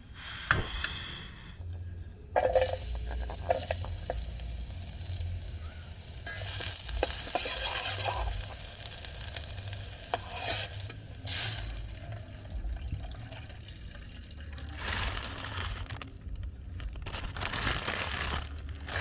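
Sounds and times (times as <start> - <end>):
food sizzling in a pan: 2.4 - 12.2
utensil scraping and clicking on pan: 6.2 - 8.6, 10.1 - 11.4.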